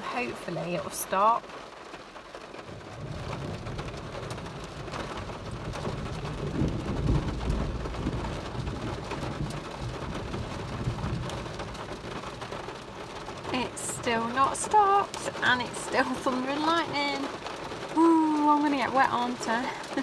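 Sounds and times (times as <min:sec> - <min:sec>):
heavy rain on a metal car roof: 0:00.0 - 0:20.0
low thunder roll: 0:02.7 - 0:12.2.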